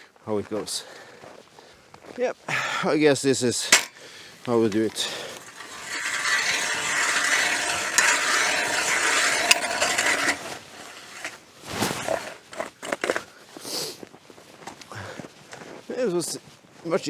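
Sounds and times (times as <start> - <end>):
knocks and scrapes: 3.7 - 3.9, 4.7 - 13.3
ice auger grinding through ice: 5.0 - 13.3.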